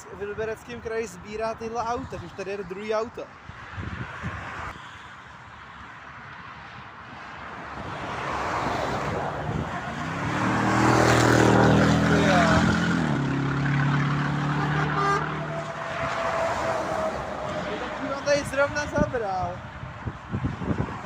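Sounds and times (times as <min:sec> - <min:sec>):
tyre and road noise: 0:00.0 - 0:21.0
truck diesel engine passing: 0:08.7 - 0:19.1.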